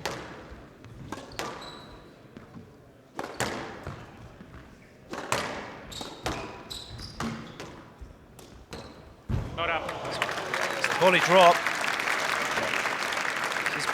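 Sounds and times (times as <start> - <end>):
shoes squeaking on court floor: 0.8 - 11.1.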